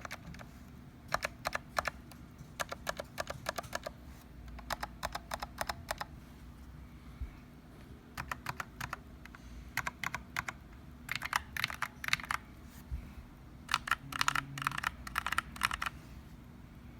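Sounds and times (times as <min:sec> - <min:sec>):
mechanical keyboard typing: 0:00.0 - 0:00.5, 0:01.1 - 0:06.1, 0:08.2 - 0:09.0, 0:09.8 - 0:12.4, 0:13.7 - 0:16.0.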